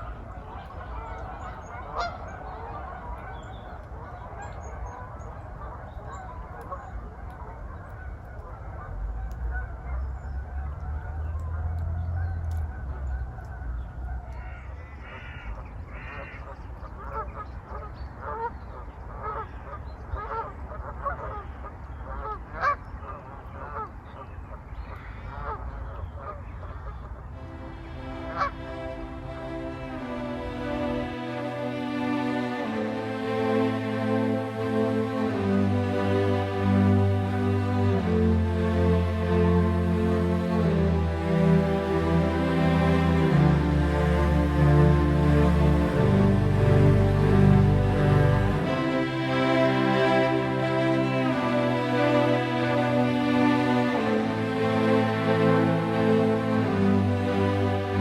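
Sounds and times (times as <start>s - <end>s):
geese honking: 0.0s - 5.2s, 27.4s - 58.0s.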